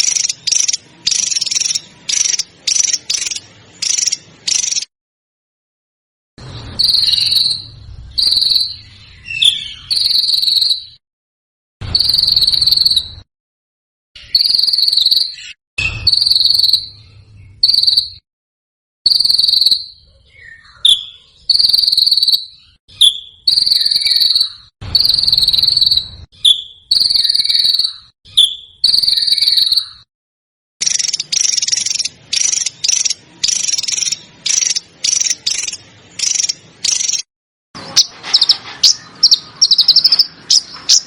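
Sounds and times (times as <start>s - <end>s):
cricket trilling: 19.1s - 19.9s.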